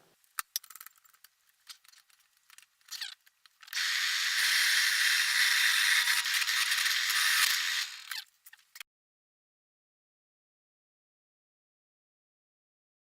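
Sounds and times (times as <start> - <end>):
power tool hissing with whine: 3.8 - 8.1.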